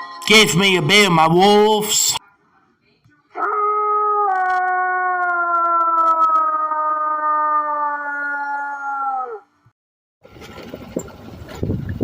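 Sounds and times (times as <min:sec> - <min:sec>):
wolf howling: 0:03.4 - 0:09.5.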